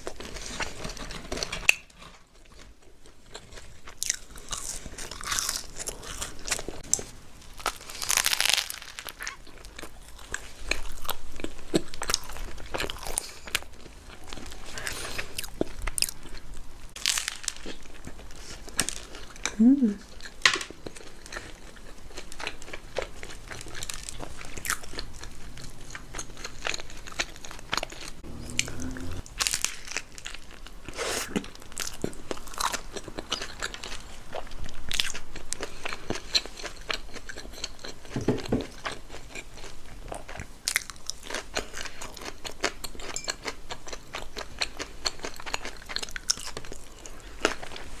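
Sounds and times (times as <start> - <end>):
chewing: 2.0 - 48.0
crunchy bites: 4.0 - 16.4, 17.0 - 19.4.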